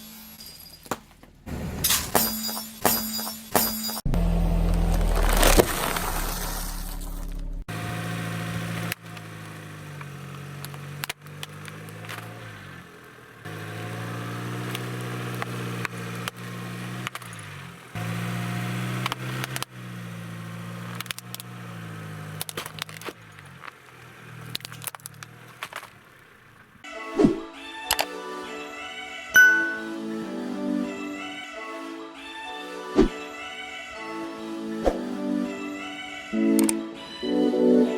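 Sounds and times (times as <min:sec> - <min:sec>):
car engine hum: 0:04.0 - 0:27.0
tyre cracking over objects: 0:04.5 - 0:07.6, 0:20.9 - 0:26.7.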